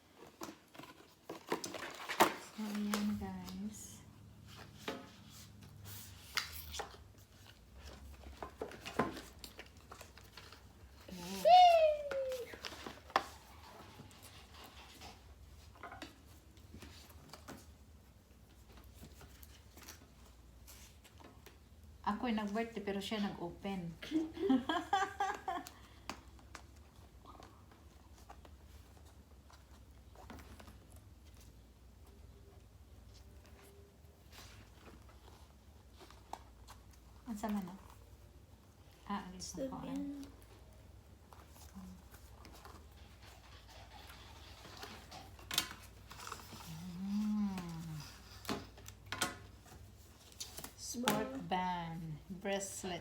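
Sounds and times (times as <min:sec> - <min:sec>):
packaging rustling and clicking: 0:00.0 - 0:03.7.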